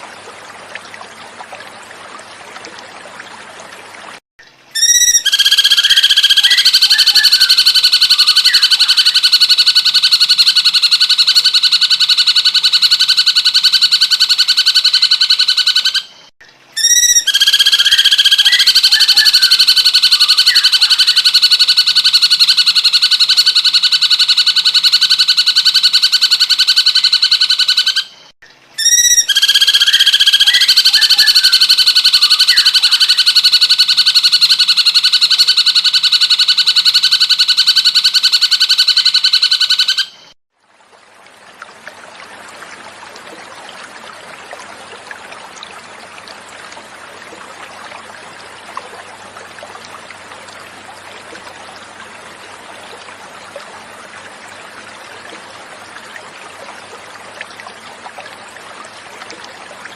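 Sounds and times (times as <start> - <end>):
water trickling: 0.0 - 27.5, 40.5 - 59.9
bird call with buzzing trill: 4.7 - 16.2, 16.8 - 28.2, 28.8 - 40.4.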